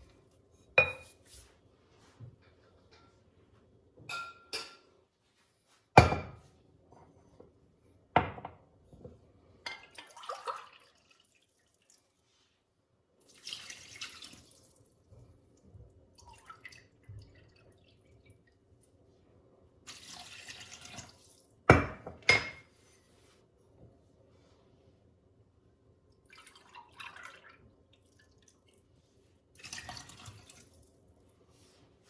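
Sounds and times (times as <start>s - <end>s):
water pouring into mixture: 13.3s - 14.8s, 29.6s - 30.8s.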